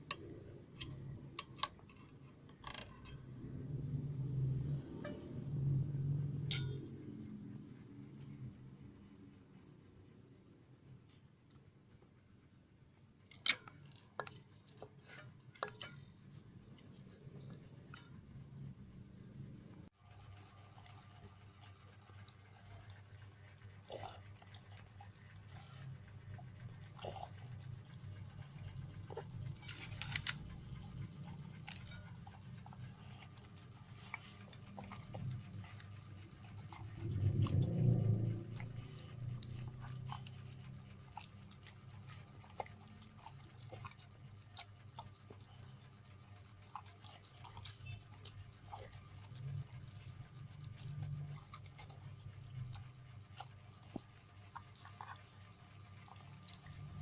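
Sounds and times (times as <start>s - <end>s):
dog chewing meat: 20.1s - 57.0s.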